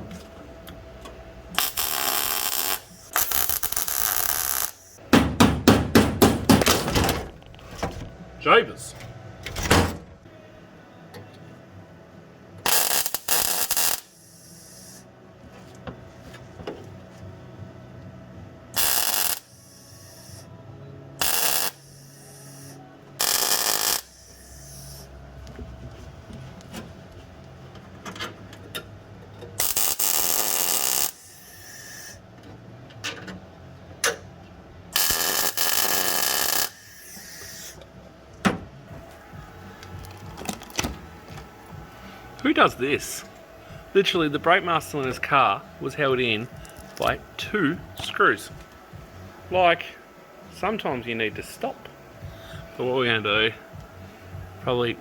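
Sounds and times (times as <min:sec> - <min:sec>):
workshop background noise: 0:00.0 - 0:55.0
loud hissing bursts: 0:29.6 - 0:32.2.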